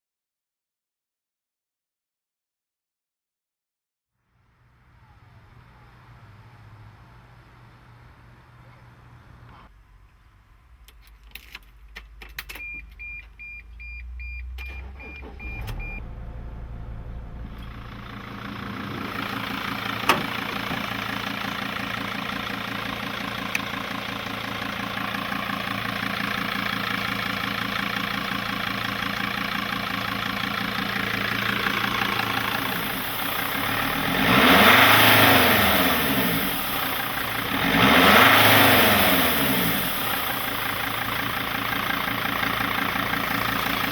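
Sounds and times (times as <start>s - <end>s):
diesel engine cranking: 10.9s - 43.9s
dashboard warning beeps: 12.5s - 16.0s
diesel engine idling: 13.7s - 43.9s
engine revving: 14.1s - 43.9s.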